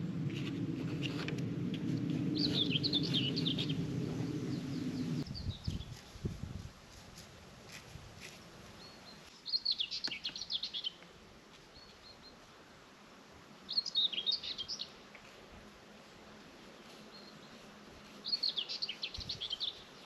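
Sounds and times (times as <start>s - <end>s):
faint outdoor background: 0.0s - 20.0s
songbird twittering: 2.3s - 6.0s, 8.8s - 11.0s.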